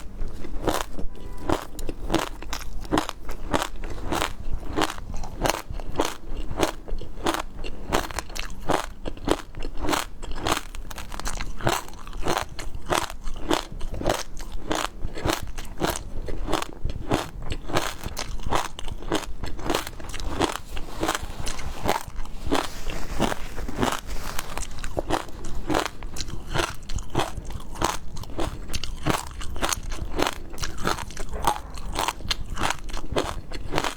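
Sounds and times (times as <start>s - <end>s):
person chewing crunchy food: 0.0s - 33.9s.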